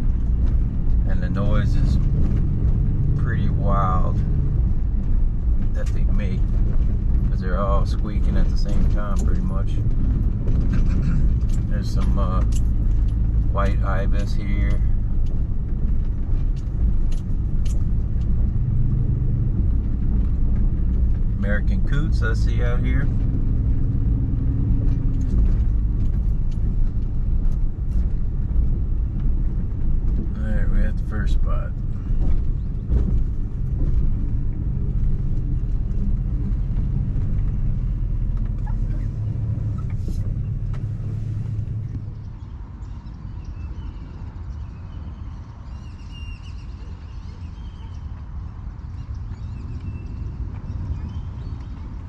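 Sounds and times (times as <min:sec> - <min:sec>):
car engine and road rumble: 0:00.0 - 0:52.0
birds squeaky whistles: 0:42.4 - 0:48.2.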